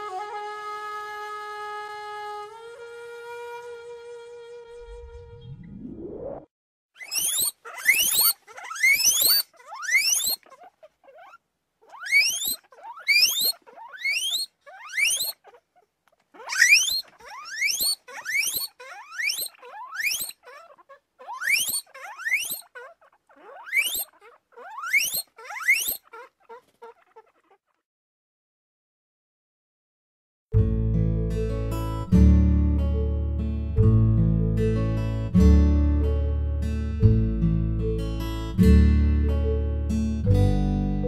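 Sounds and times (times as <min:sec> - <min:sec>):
guinea pig squealing: 0:07.0 - 0:27.8.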